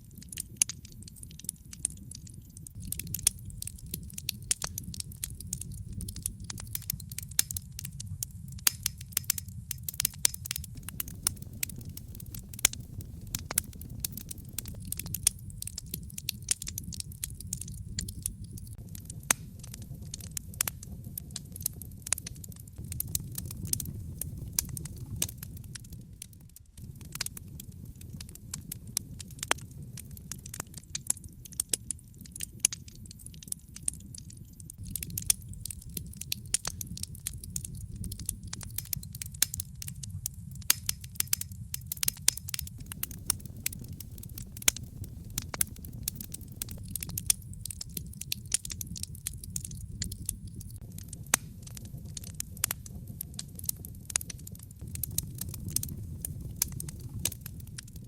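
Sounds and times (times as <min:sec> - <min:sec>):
low fire rumble: 0:00.0 - 0:58.0
wood fire popping and snapping: 0:00.0 - 0:58.0.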